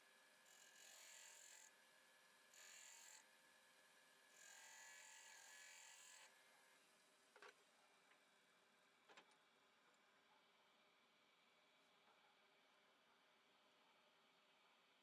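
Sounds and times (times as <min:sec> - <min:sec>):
small power tool motor whirring: 0:00.5 - 0:01.6, 0:02.6 - 0:03.3, 0:04.3 - 0:06.3.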